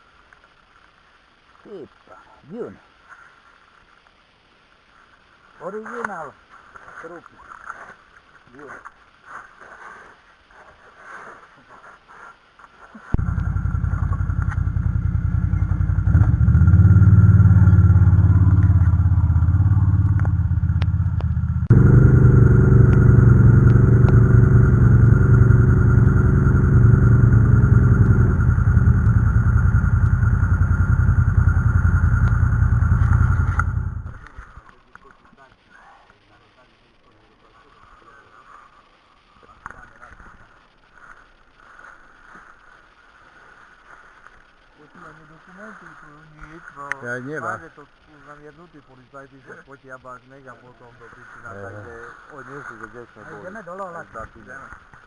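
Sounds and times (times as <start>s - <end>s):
atv engine running loud: 13.2s - 34.3s.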